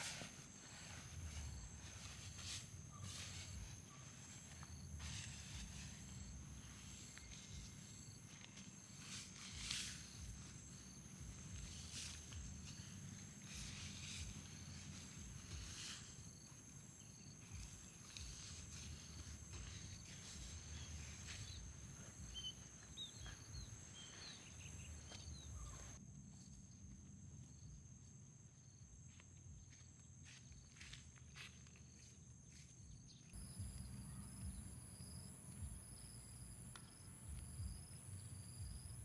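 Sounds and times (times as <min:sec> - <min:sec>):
insects trilling: 0:00.0 - 0:26.5.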